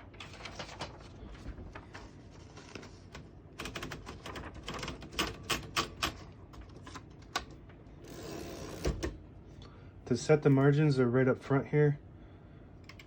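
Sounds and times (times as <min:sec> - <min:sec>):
typewriter clacking: 0:03.6 - 0:07.5.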